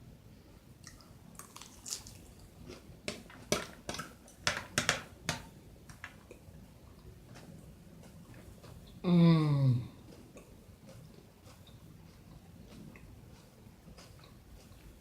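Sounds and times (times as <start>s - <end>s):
person chewing food: 0.8s - 4.3s, 5.9s - 9.0s, 9.8s - 15.0s.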